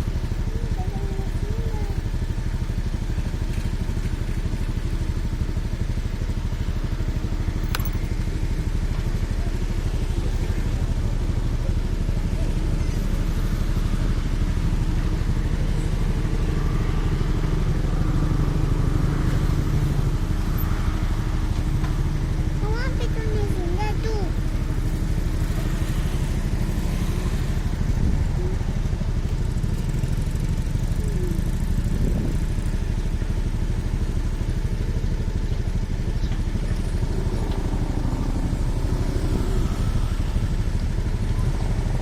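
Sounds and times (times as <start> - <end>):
excavator diesel engine running: 0.0 - 42.0
sharp click: 7.7 - 8.0.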